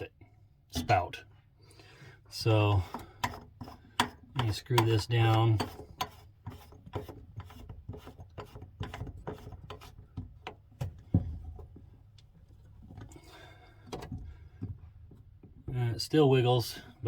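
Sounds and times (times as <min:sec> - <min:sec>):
threaded trim scraping and clicking: 0:02.9 - 0:10.7.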